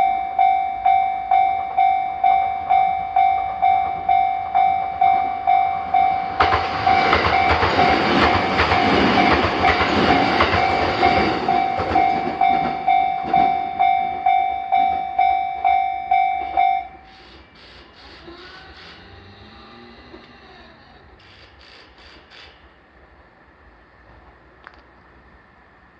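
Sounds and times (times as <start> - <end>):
level crossing bell clanging: 0.0 - 17.1
train wheels clattering: 2.3 - 19.5.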